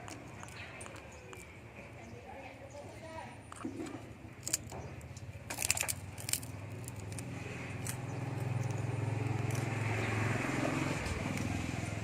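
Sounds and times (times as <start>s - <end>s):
sharp clicks and rattles: 3.5s - 10.2s
vehicle engine hum: 3.6s - 12.0s.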